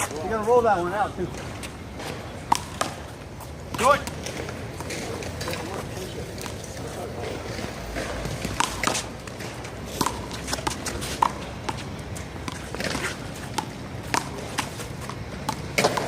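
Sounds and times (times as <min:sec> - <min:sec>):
players' footsteps: 0:00.0 - 0:16.0
handball smacks and bounces: 0:08.0 - 0:16.0.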